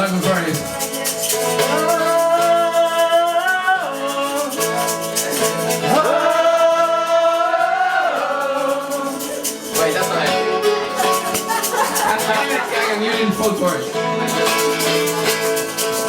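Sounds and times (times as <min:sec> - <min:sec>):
shaker rhythm: 0:00.0 - 0:16.0
strummed guitar: 0:00.0 - 0:16.0.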